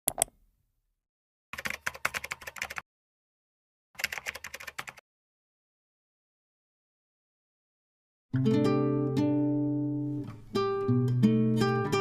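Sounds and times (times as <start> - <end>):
computer keyboard typing: 1.6 - 2.8, 4.0 - 5.0.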